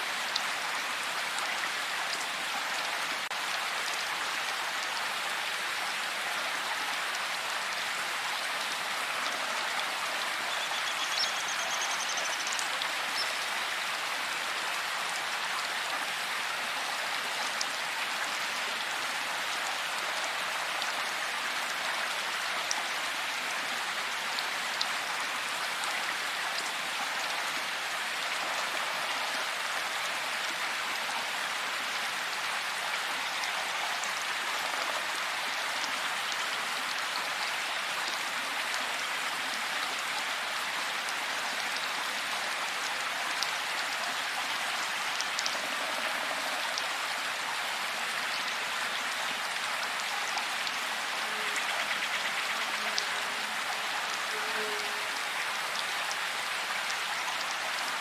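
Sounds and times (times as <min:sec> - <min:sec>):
steady rain in forest: 0:00.0 - 0:58.0
faint high chirp: 0:10.5 - 0:12.6.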